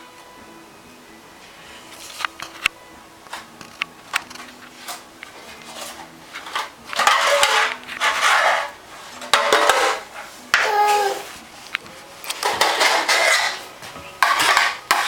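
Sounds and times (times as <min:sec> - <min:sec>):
pots and pans clattering: 0:04.1 - 0:11.0, 0:12.3 - 0:15.0.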